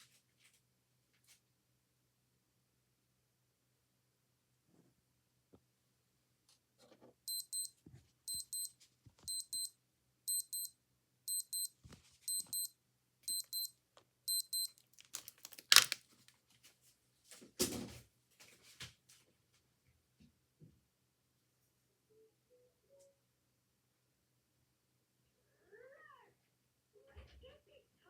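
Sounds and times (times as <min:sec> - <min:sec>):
digital watch alarm beeping: 0:07.3 - 0:07.7, 0:08.3 - 0:08.7, 0:09.3 - 0:09.7, 0:10.3 - 0:10.7, 0:11.3 - 0:11.7, 0:12.3 - 0:12.7, 0:13.3 - 0:13.7, 0:14.3 - 0:14.7.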